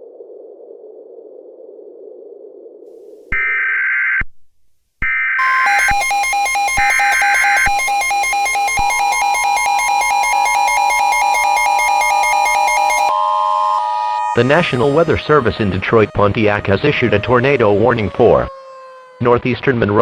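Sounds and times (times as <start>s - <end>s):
buzzy data bursts: 5.4s - 16.5s
pulsing electronic alert tone: 5.4s - 17.7s
rising tone: 5.4s - 19.3s.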